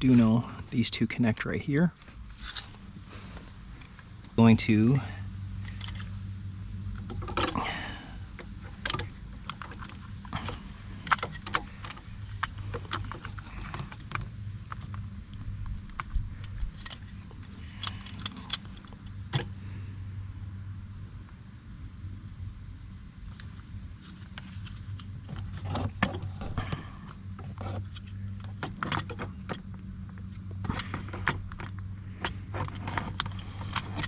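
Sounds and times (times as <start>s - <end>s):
steady low hum: 0.0s - 34.0s
small parts clicking and rattling: 5.4s - 6.3s, 6.9s - 19.5s, 23.3s - 34.0s.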